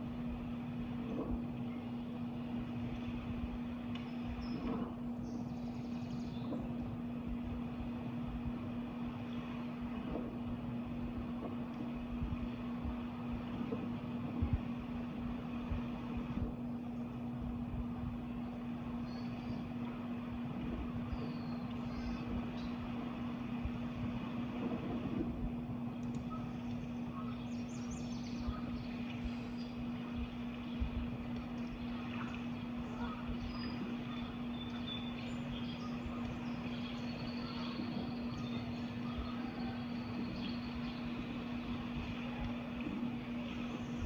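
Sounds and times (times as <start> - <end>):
constant rumbling background: 0.0 - 44.0
steady low hum: 0.0 - 44.0
faint bird chirps: 21.1 - 22.8, 26.1 - 31.0, 31.6 - 41.8.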